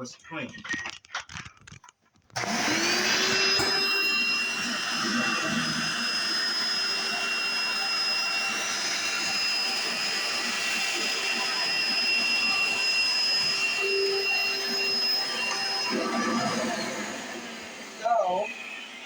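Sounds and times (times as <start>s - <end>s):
vacuum cleaner motor whine: 2.4s - 19.0s.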